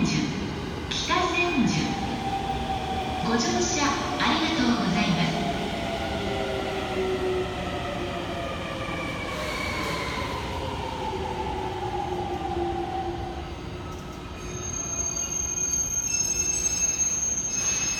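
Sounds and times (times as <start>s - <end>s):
high wheel squeal: 14.4s - 17.9s.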